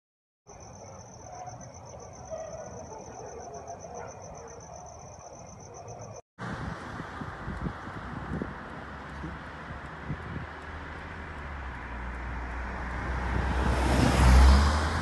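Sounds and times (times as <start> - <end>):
crickets trilling: 0.5 - 6.2.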